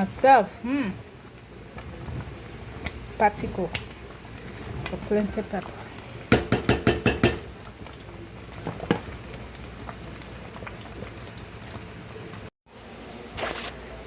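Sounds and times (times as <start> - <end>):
sauce bubbling with hiss: 0.0 - 12.5
spoon knocking on pot: 6.3 - 7.5.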